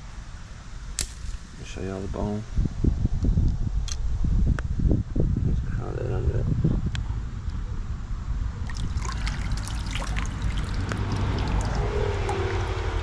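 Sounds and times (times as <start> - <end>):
small sharp splashes: 1.0 - 1.6, 8.7 - 11.8
low rumble: 1.0 - 13.0
creek water trickling: 8.6 - 13.0.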